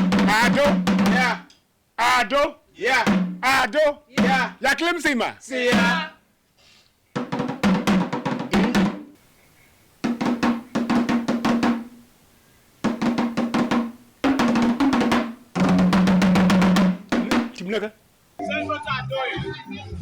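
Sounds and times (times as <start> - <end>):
rapid drumming: 0.0 - 1.5, 2.9 - 4.6, 5.6 - 6.1, 7.2 - 9.2, 10.0 - 12.1, 12.8 - 17.9.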